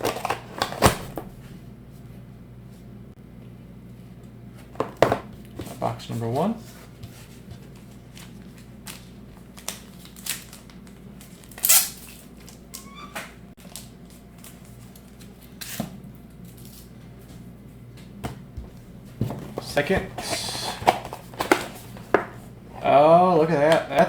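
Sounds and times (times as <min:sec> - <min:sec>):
steady low hum: 0:00.0 - 0:24.0
cardboard and wrapper crinkling: 0:07.4 - 0:12.6, 0:13.6 - 0:15.8.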